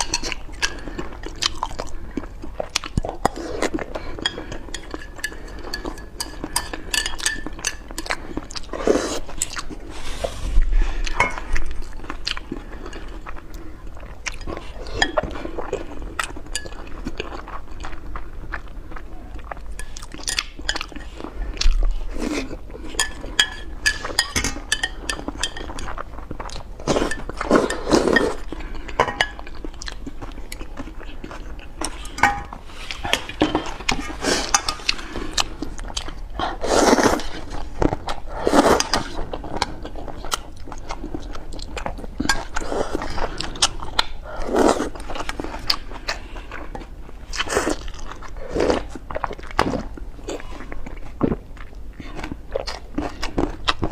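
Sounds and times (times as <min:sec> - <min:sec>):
person chewing and biting food: 0:00.0 - 0:10.0.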